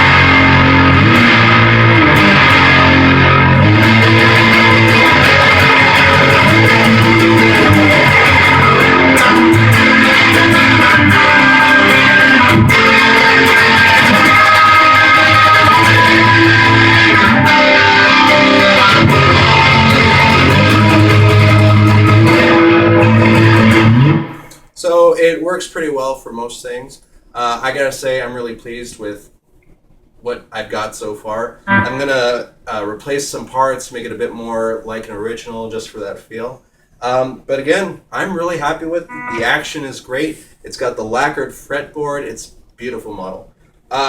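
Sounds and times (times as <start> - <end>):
distorted electric guitar riff: 0.0 - 24.5, 31.7 - 32.3, 39.0 - 39.8.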